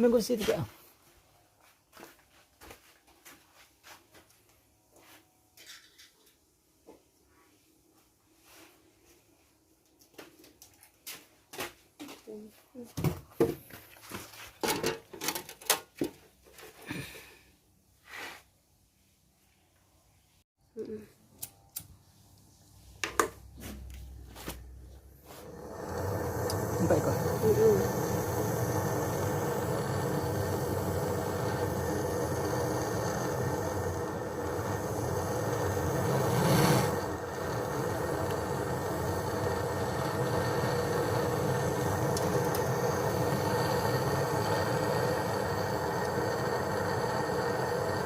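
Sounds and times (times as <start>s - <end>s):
long scrape: 25.2s - 48.0s
machine running with hiss: 25.2s - 48.0s.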